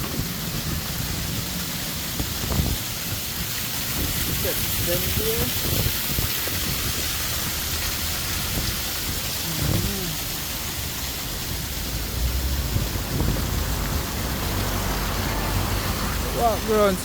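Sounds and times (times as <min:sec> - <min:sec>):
waterfall rushing: 0:00.0 - 0:17.0
low rumble: 0:09.4 - 0:16.2.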